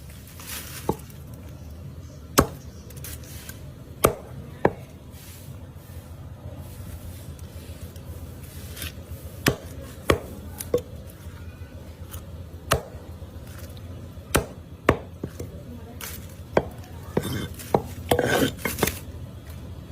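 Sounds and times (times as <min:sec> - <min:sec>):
handling and scraping: 0:00.0 - 0:12.4, 0:13.3 - 0:19.9
knife chopping on cutting board: 0:09.4 - 0:10.3, 0:16.6 - 0:19.0.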